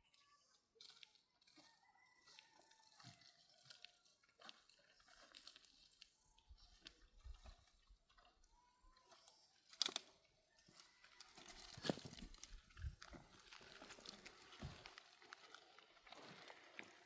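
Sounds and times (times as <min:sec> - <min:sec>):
faint rustles and ticks: 0:00.0 - 0:17.0.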